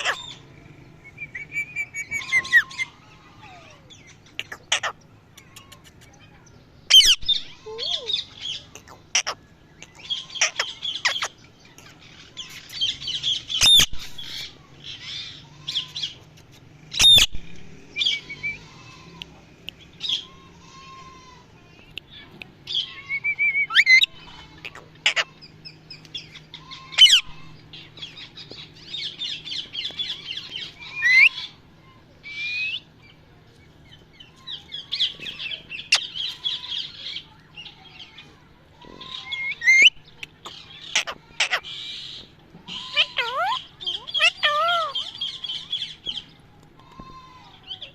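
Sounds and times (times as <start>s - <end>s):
parrot squawking and chirping: 0.0s - 0.5s, 1.2s - 6.2s, 6.9s - 16.2s, 16.9s - 17.4s, 22.7s - 31.6s, 34.2s - 37.3s, 39.0s - 46.2s.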